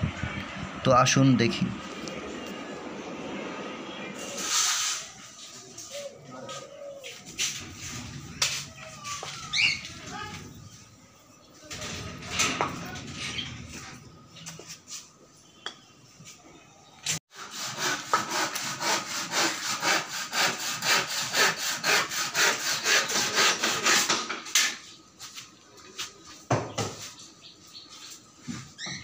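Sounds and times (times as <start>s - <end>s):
saw cutting through wood: 17.3s - 24.2s.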